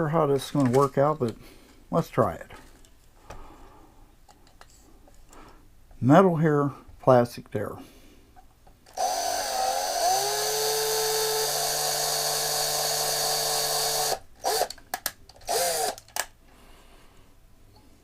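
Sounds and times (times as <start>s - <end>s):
small power drill drilling metal: 8.9s - 14.8s, 15.4s - 16.0s.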